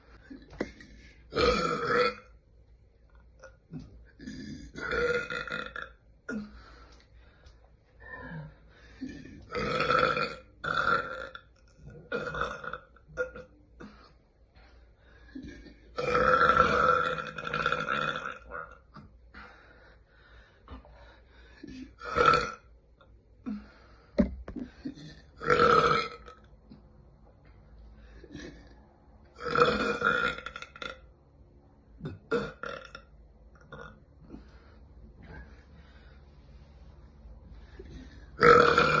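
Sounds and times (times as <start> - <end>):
women burping loudly: 38.4 - 39.0.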